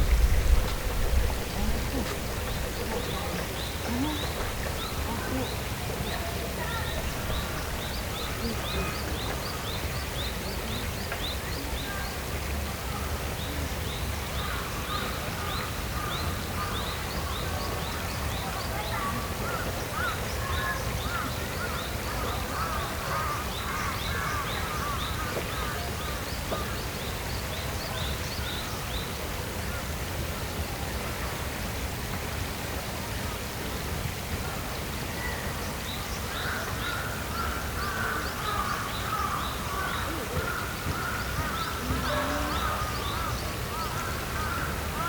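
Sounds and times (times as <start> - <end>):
lower bird calls: 0.0 - 11.2.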